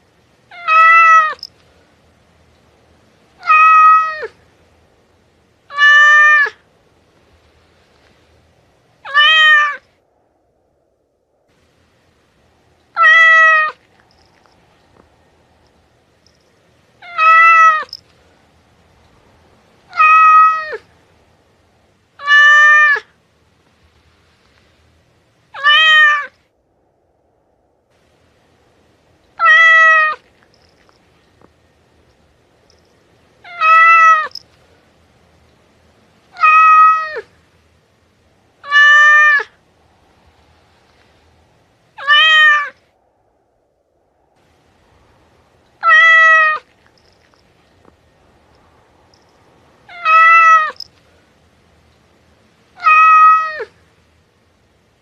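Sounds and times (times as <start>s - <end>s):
cat meowing: 0.5s - 1.5s, 3.4s - 4.4s, 5.7s - 6.6s, 9.0s - 9.8s, 12.9s - 13.9s, 17.0s - 18.0s, 19.9s - 20.8s, 22.2s - 23.1s, 25.6s - 26.4s, 29.4s - 30.3s, 33.4s - 34.4s, 36.3s - 37.3s, 38.6s - 39.6s, 42.0s - 42.8s, 45.8s - 46.8s, 49.9s - 50.9s, 52.8s - 53.8s.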